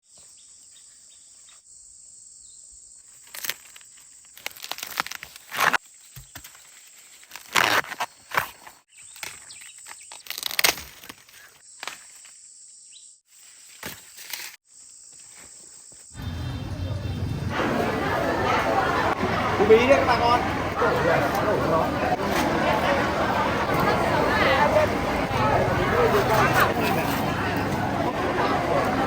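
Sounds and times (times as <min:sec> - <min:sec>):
rustling and tearing plants: 0:03.1 - 0:12.4, 0:13.4 - 0:14.6.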